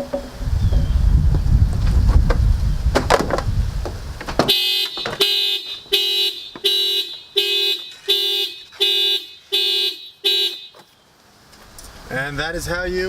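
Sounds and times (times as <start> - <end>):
low rumble: 0.0 - 3.8
car alarm horn honking: 4.5 - 10.9.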